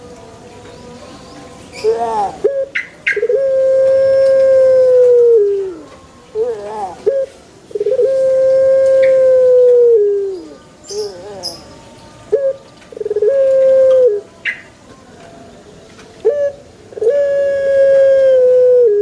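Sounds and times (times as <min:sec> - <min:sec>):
dove cooing: 0:01.7 - 0:11.7, 0:12.3 - 0:14.7, 0:16.2 - 0:19.0.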